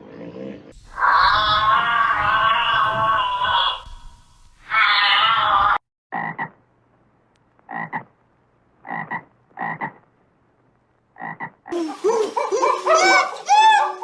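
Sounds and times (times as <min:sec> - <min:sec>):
animal croaking call: 0:00.9 - 0:06.6, 0:07.7 - 0:08.1, 0:08.8 - 0:10.0, 0:11.2 - 0:11.8.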